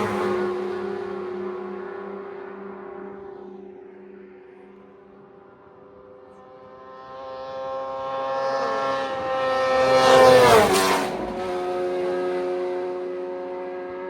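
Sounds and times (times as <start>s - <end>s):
racing motorcycle passing by: 0.0s - 14.0s.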